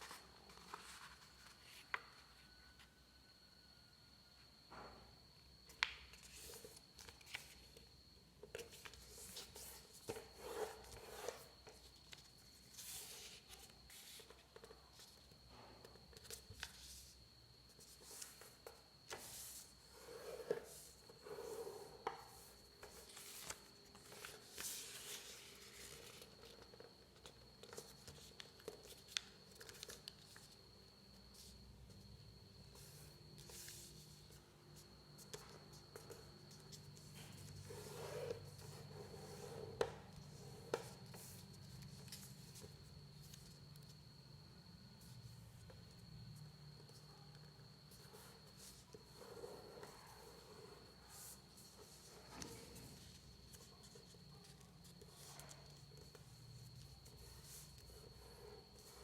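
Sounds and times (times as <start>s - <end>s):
paper rustling while folded: 0.0s - 2.5s, 22.8s - 30.6s
faint high whine: 0.0s - 59.0s.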